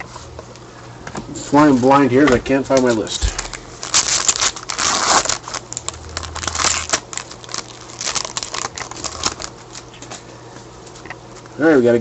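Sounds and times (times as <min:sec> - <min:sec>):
cards and papers rustling: 0:02.7 - 0:10.3.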